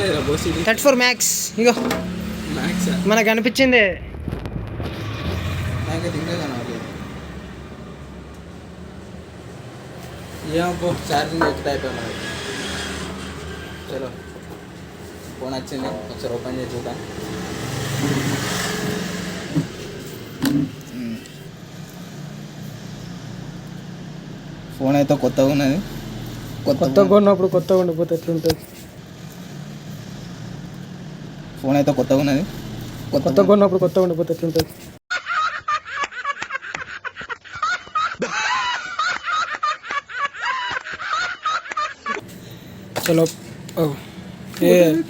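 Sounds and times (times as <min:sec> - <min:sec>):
low hum: 0:04.0 - 0:10.4.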